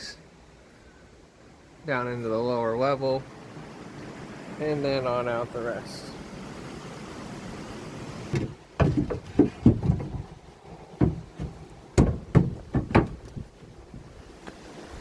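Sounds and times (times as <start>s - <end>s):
wooden boards knocking and thumping: 8.3s - 14.1s.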